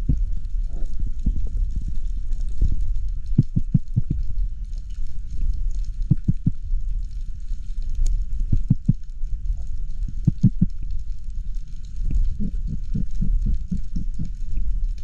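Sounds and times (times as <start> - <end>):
muffled underwater rumble: 0.0 - 15.0.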